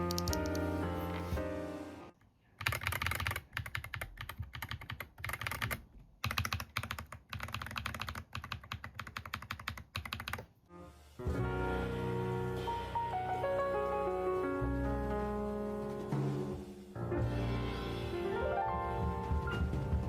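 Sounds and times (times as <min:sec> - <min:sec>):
mechanical keyboard typing: 0:00.0 - 0:00.7, 0:02.6 - 0:10.5
background music: 0:00.0 - 0:02.2, 0:10.7 - 0:20.0.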